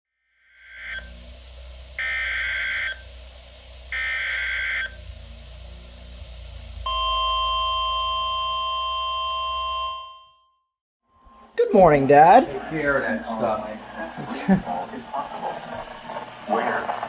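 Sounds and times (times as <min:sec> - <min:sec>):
screeching data bursts: 0:00.6 - 0:03.2, 0:03.8 - 0:05.2
low hum: 0:01.0 - 0:09.7, 0:11.1 - 0:17.0.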